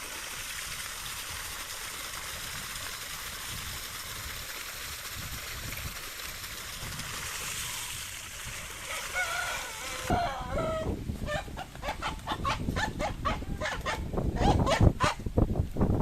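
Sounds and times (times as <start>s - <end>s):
farm animal wavering call: 8.9s - 12.0s.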